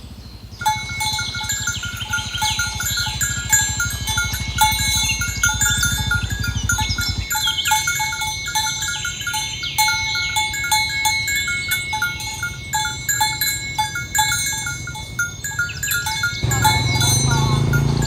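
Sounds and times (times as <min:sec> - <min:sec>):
tinkling bell-like notes: 0:00.6 - 0:18.0
cow mooing: 0:01.1 - 0:07.5, 0:16.4 - 0:18.0.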